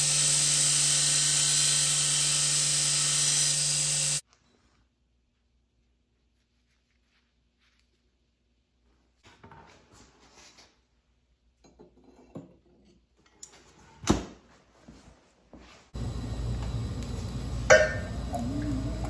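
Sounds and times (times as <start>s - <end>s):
machine humming and whining: 16.0s - 19.0s
metal clinking: 17.0s - 18.3s
ringing metal clang: 17.7s - 18.1s.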